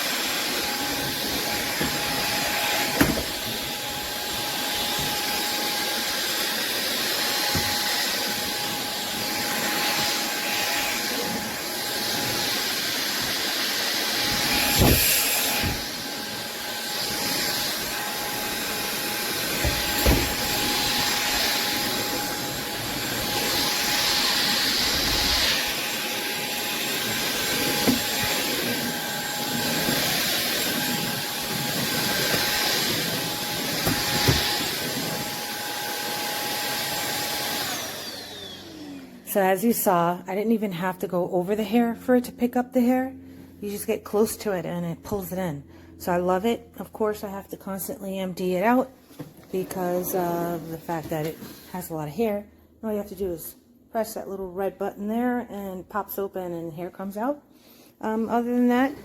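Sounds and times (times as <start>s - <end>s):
stick vacuum cleaner whining: 0.0s - 39.9s.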